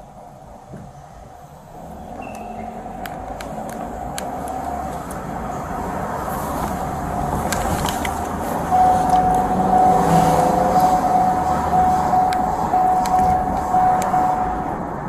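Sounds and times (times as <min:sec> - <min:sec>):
motor vehicle running: 0:01.8 - 0:15.0
steady high tone: 0:08.7 - 0:15.0
scattered clicks: 0:12.2 - 0:14.2.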